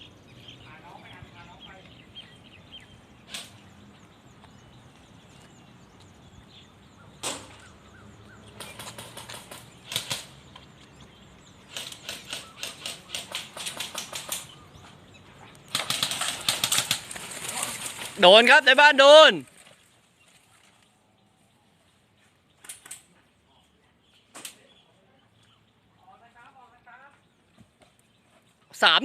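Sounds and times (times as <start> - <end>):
airsoft guns firing: 8.6 - 10.3, 11.7 - 14.5, 15.7 - 17.1.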